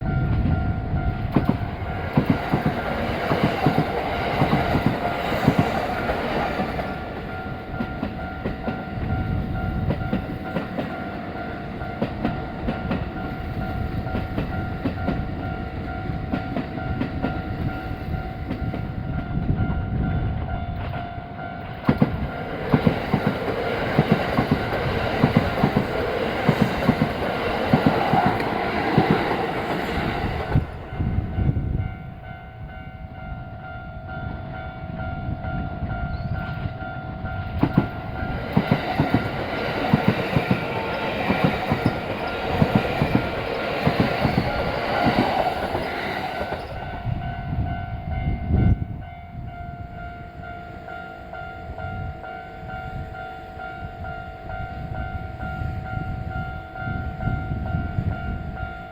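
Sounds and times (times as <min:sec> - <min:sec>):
level crossing warning bell: 0:00.0 - 0:58.9
train wheels clattering over rail joints: 0:21.8 - 0:30.6, 0:37.6 - 0:46.8.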